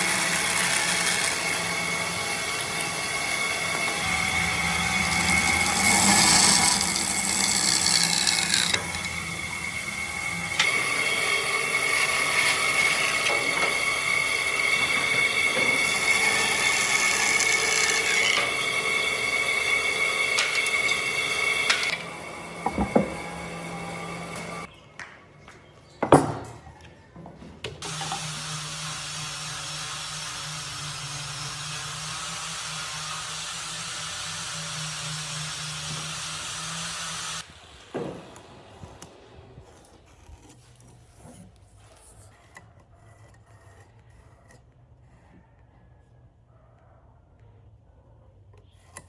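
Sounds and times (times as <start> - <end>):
electric power tool working wood: 0.0 - 24.7, 27.8 - 40.0.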